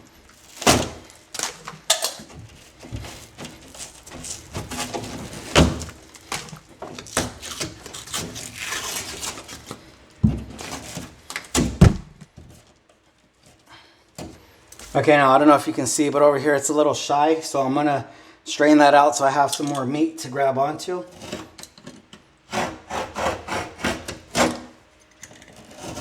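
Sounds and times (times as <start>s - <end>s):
hand saw cutting drywall: 2.6s - 9.9s, 21.1s - 21.7s, 22.4s - 24.8s, 25.5s - 26.0s
knocks and thumps: 10.2s - 10.6s, 11.5s - 12.6s
rough scraping: 25.5s - 26.0s.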